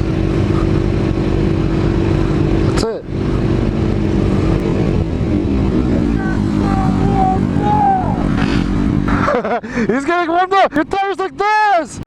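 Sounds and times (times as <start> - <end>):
motorcycle engine running: 0.0 - 10.8
wind rushing on microphone: 3.2 - 9.3.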